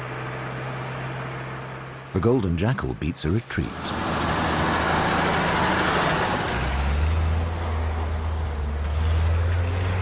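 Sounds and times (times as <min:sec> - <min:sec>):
combine harvester engine drone: 0:00.0 - 0:10.0.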